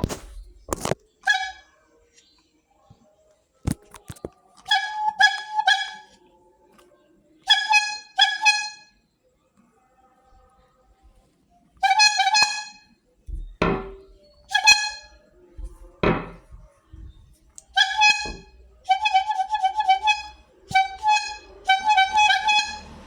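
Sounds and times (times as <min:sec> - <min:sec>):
vendor's horn tooting: 0:00.0 - 0:01.8, 0:03.7 - 0:06.2, 0:07.4 - 0:09.0, 0:11.8 - 0:23.0.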